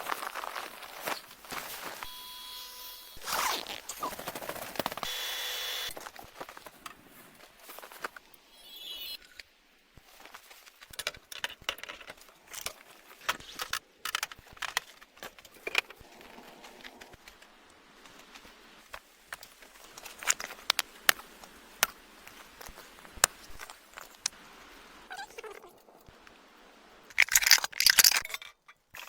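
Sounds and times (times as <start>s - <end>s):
faint steady hiss: 0.0s - 29.0s
sharp clicks and crackles: 9.1s - 24.5s, 27.0s - 29.0s.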